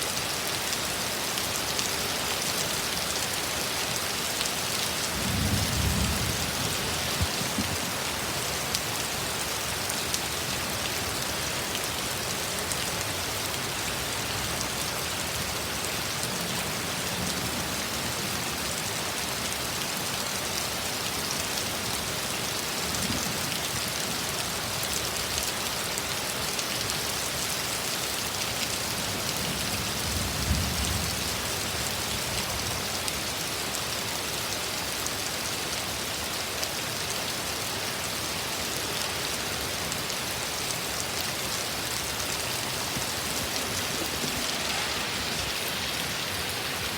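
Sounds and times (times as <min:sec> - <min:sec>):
heavy rain pouring: 0:00.0 - 0:46.9
low thunder rumble: 0:05.1 - 0:08.2.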